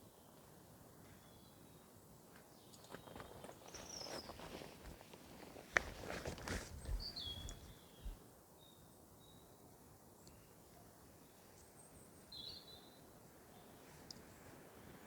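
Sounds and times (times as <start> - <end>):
footsteps on woodland floor: 3.1 - 8.2
bird chirping: 6.8 - 9.4.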